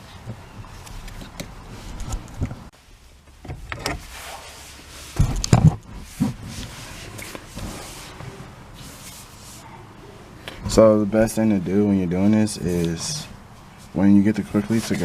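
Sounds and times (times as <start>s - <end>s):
handling knocks and clunks: 5.1s - 8.4s.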